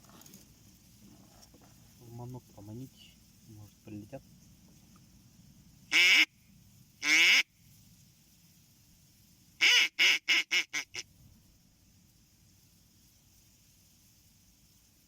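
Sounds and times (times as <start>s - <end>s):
duck quacking: 5.9s - 6.3s, 7.0s - 7.4s, 9.6s - 11.0s.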